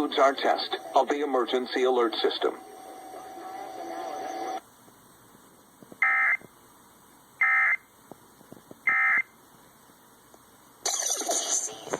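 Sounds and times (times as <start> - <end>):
warbling digital data bursts: 10.8 - 11.9.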